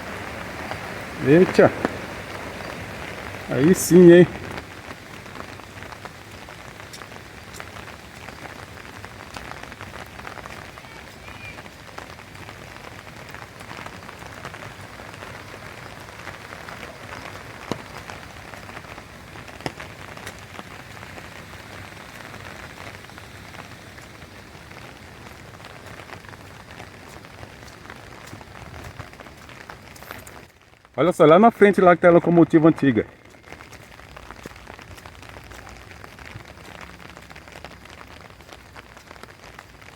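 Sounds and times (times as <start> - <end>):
steady rain falling: 0.0 - 39.9
sharp drip ticks: 4.4 - 11.2.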